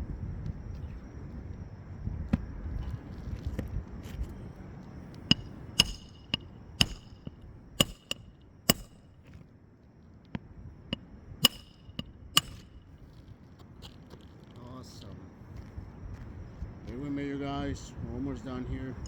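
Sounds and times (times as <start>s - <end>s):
hammer striking roofing nails: 5.3s - 9.4s, 11.4s - 13.0s.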